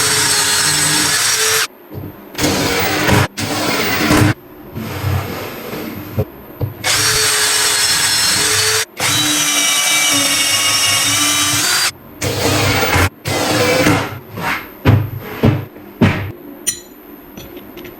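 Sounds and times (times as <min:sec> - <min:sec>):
power tool motor whining: 0:00.0 - 0:01.7, 0:02.4 - 0:04.4, 0:06.8 - 0:14.2
workshop clatter: 0:10.3 - 0:17.9.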